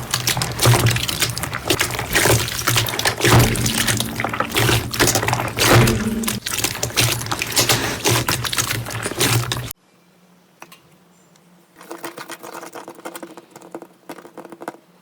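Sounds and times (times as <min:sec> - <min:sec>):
slime squelching: 0:00.0 - 0:09.8.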